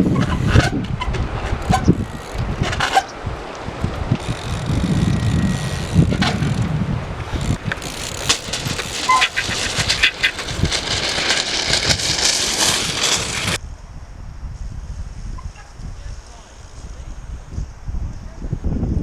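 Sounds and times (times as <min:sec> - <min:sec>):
bike tyres rumbling: 0:00.0 - 0:13.6
bike knocks and clatters: 0:03.9 - 0:13.6.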